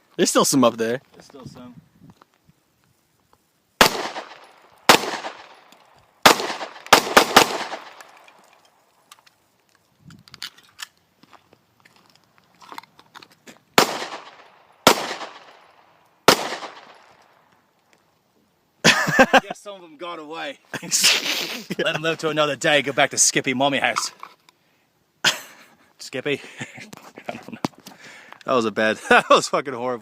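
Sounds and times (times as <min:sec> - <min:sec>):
gunshots with ringing echo: 0:03.8 - 0:08.2, 0:13.8 - 0:17.1.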